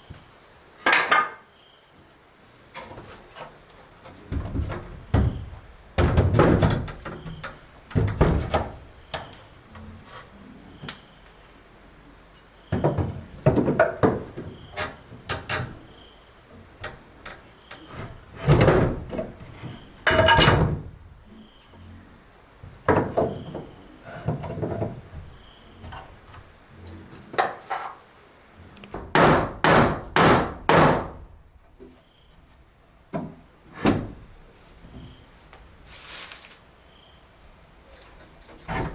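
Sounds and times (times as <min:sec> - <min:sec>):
insects chirring: 0:00.0 - 0:38.9
wood knocks and thuds: 0:02.8 - 0:09.5, 0:12.7 - 0:15.8, 0:17.9 - 0:21.0, 0:22.6 - 0:26.4, 0:29.0 - 0:31.4.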